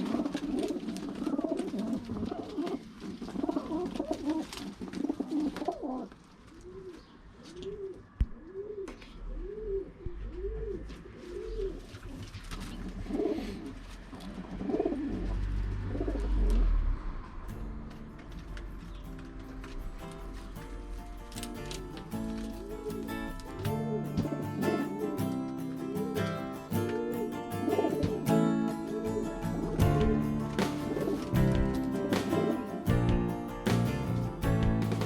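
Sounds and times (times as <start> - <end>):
pigeons cooing: 0.0 - 16.5, 18.7 - 33.2.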